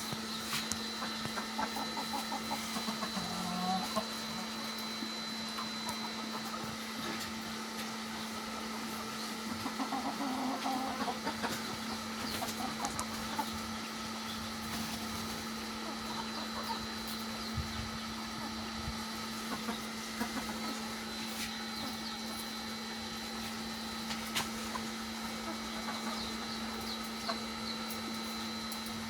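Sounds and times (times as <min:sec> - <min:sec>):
chickens clucking: 0:00.0 - 0:29.0
steady low hum: 0:00.0 - 0:29.0.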